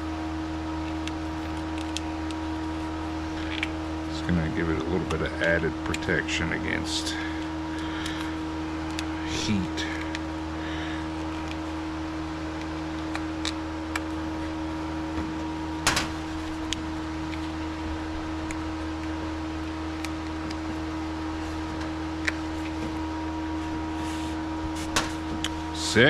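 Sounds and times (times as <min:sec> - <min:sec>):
machine humming: 0:00.0 - 0:26.0.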